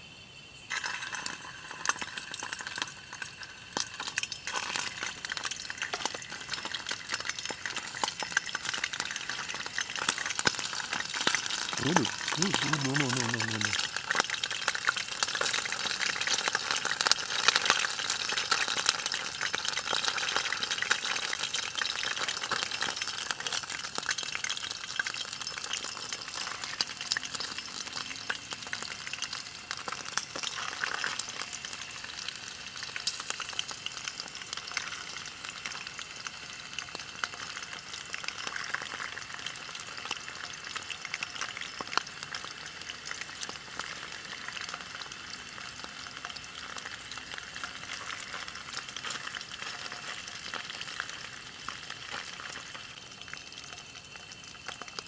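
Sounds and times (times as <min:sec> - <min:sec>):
fish frying in hot oil: 0:00.1 - 0:55.0.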